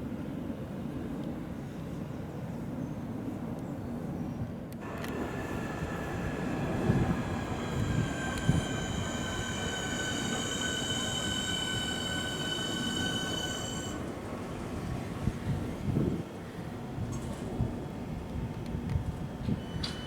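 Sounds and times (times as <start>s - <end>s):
electric train whine: 4.8s - 20.0s
train running rumble: 4.8s - 20.0s.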